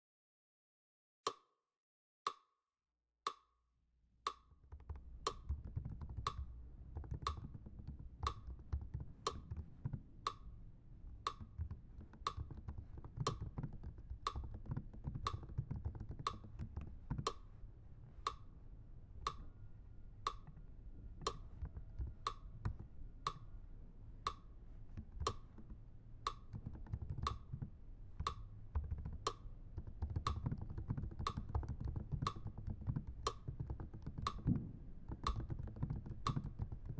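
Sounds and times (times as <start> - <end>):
steady wooden clicks: 4.3 - 10.5, 11.1 - 17.6, 18.2 - 18.5, 20.2 - 23.5, 24.2 - 36.9.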